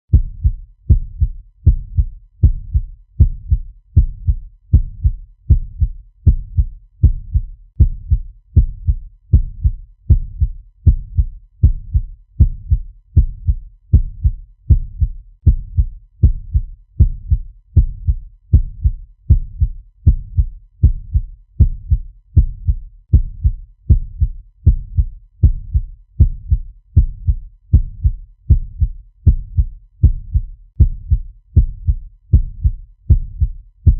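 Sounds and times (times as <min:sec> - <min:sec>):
heartbeat thumps: 0:00.1 - 0:33.9.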